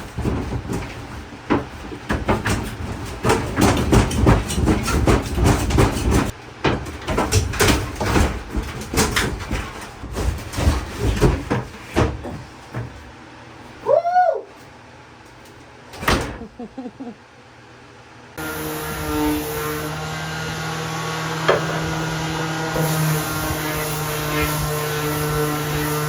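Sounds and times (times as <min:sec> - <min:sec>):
rapid clattering and knocking: 0:00.0 - 0:13.1.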